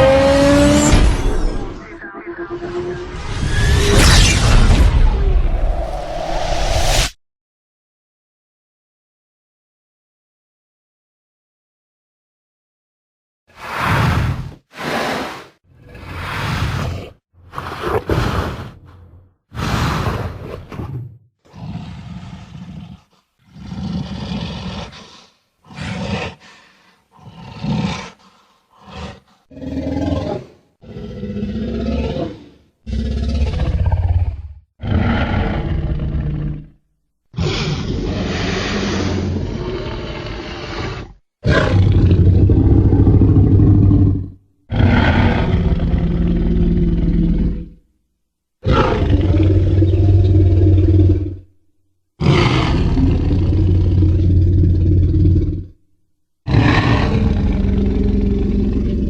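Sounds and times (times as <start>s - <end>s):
monster roars: 37.4s - 47.8s, 48.6s - 51.4s, 52.2s - 55.8s, 56.5s - 59.0s.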